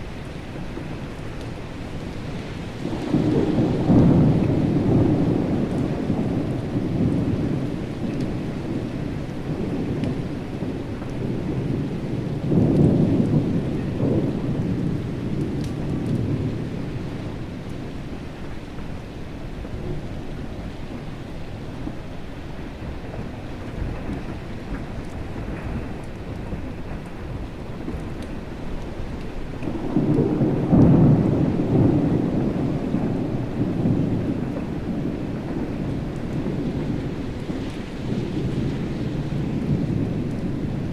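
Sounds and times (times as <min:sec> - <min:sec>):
steady rain falling: 0:00.0 - 0:40.9
thunder rumbling: 0:00.0 - 0:40.9.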